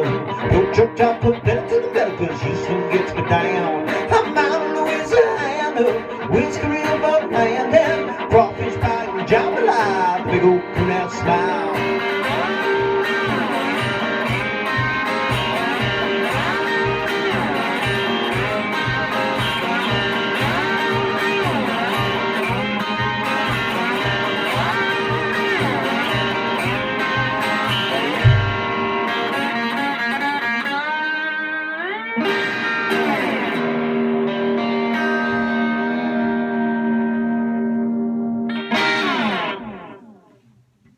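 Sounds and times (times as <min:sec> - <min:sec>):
lead guitar with bending notes: 0:00.0 - 0:40.5
bass and drum beat: 0:12.2 - 0:28.8.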